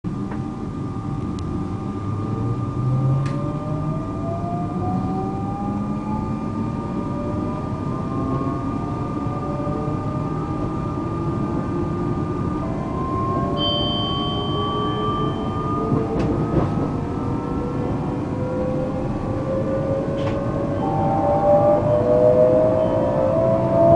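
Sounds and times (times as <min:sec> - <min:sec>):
low train running rumble: 0:00.1 - 0:23.9
train traction motors whining: 0:14.2 - 0:23.9.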